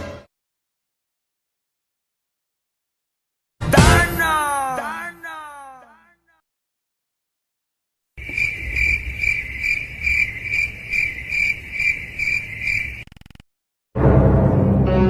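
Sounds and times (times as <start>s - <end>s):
cricket chirping: 8.2s - 13.4s.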